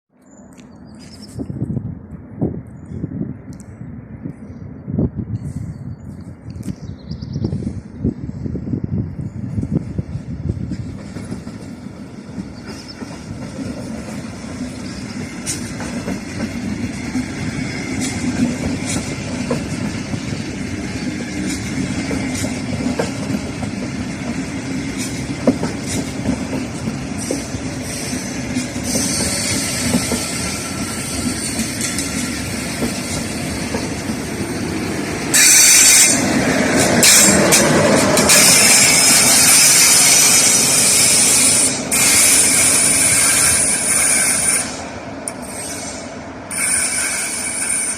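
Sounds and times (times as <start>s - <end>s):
train rolling on tracks: 0.2s - 47.9s
train wheels squealing: 26.9s - 36.4s, 37.0s - 47.9s
harsh brake squeal: 27.9s - 31.8s, 35.3s - 36.2s, 38.3s - 44.8s, 45.4s - 47.9s.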